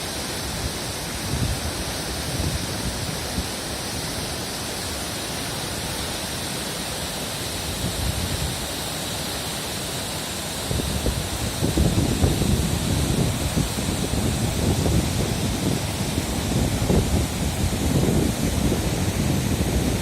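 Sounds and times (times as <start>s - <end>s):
waterfall rushing: 0.0s - 20.0s
wind on microphone: 0.5s - 3.6s, 7.7s - 8.7s, 10.5s - 20.0s.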